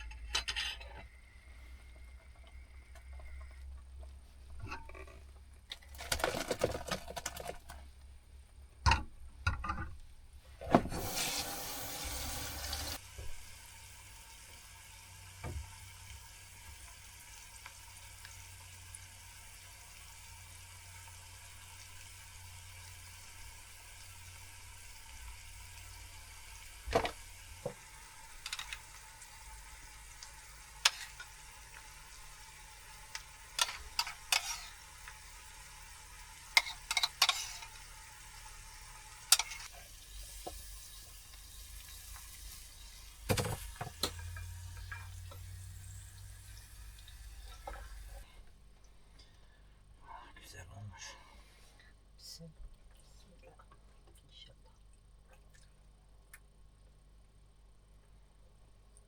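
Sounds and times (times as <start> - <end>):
utensils scraping a pan: 0.0 - 1.1, 30.8 - 31.4, 33.1 - 34.9, 36.5 - 37.8, 39.2 - 39.8
food sizzling: 10.9 - 48.2.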